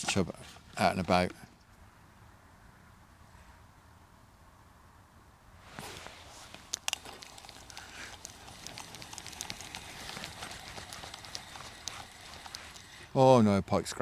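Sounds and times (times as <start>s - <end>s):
fishing reel clicking: 6.5s - 13.4s.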